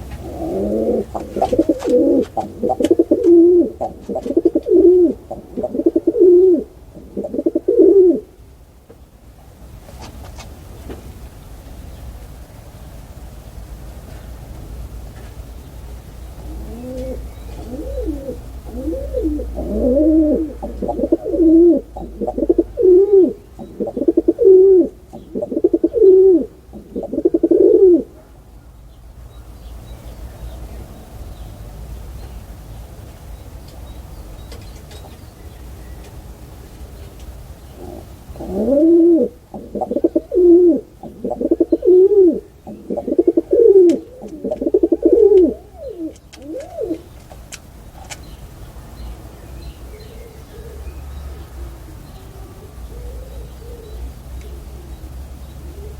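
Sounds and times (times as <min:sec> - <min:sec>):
pigeon cooing: 0:00.0 - 0:08.4, 0:16.4 - 0:28.2, 0:37.7 - 0:47.1, 0:50.1 - 0:55.9.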